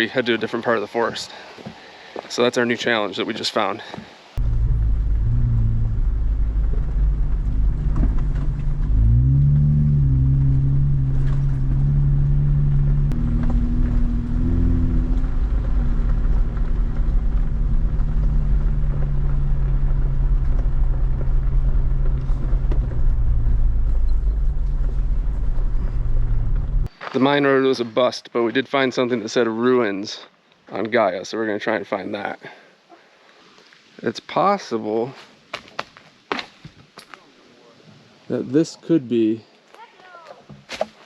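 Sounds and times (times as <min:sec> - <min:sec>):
car engine driving: 0:04.4 - 0:26.9.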